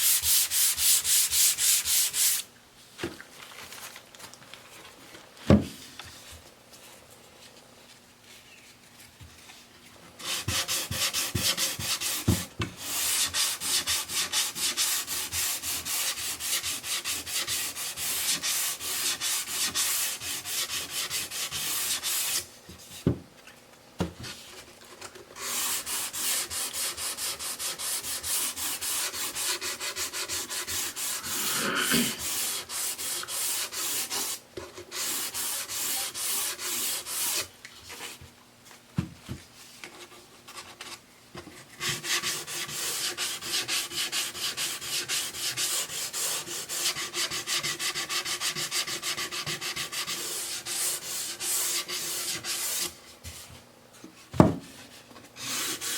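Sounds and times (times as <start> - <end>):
sandpaper rubbing on wood: 0.0 - 2.4, 10.2 - 22.4, 25.4 - 37.5, 41.8 - 52.9, 55.4 - 55.9.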